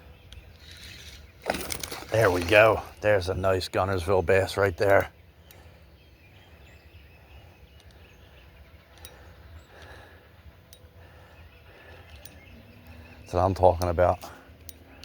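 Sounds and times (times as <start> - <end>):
faint outdoor background noise: 0.0 - 15.0
soft ticks: 7.8 - 8.0, 8.9 - 10.0, 10.7 - 11.0, 13.7 - 15.0.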